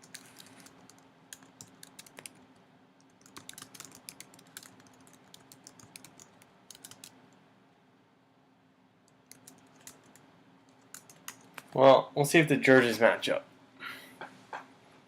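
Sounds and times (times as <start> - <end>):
computer keyboard typing: 0.0 - 2.4, 3.0 - 7.2, 9.1 - 11.7.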